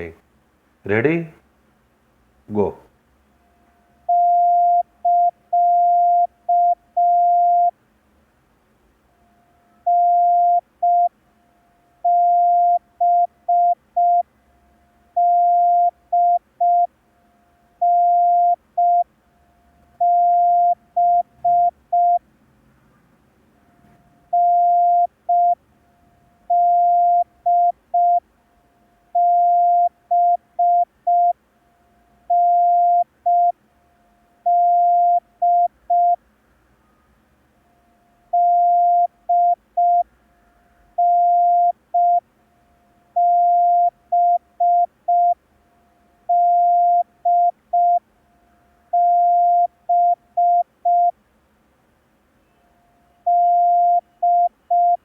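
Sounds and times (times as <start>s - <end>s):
morse code beeps: 9.9s - 11.1s, 12.1s - 14.2s, 15.2s - 16.9s, 17.8s - 19.1s, 20.0s - 22.2s, 24.3s - 25.6s, 26.5s - 28.2s, 29.2s - 31.4s, 32.3s - 33.6s, 34.5s - 36.2s, 38.3s - 40.0s, 41.0s - 42.2s, 43.2s - 45.4s, 46.3s - 48.0s, 49.0s - 51.1s, 53.3s - 55.0s.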